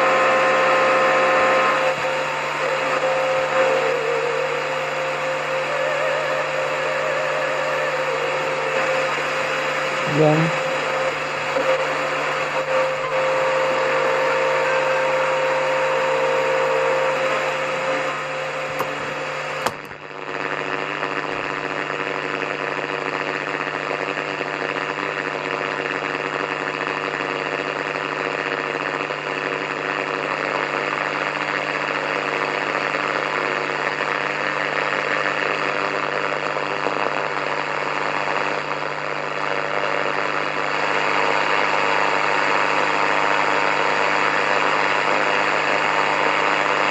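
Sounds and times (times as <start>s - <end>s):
radio static hiss: 0.0s - 46.9s
faint humming tones: 0.1s - 20.1s
sharp click: 19.6s - 20.0s.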